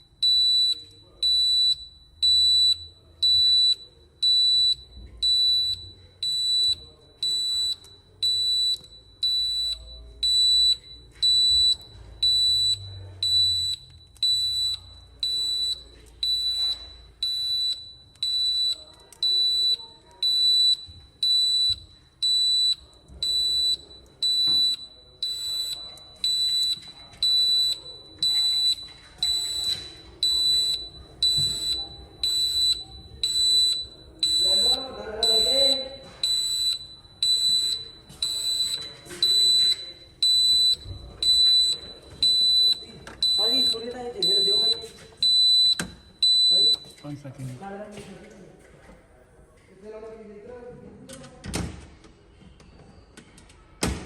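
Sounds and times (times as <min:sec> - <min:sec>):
high-pitched alarm buzzer beeping: 0:08.3 - 0:47.1.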